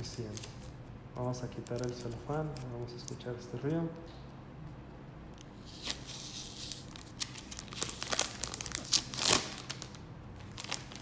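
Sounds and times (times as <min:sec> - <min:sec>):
cellophane crinkling: 0:05.7 - 0:11.0.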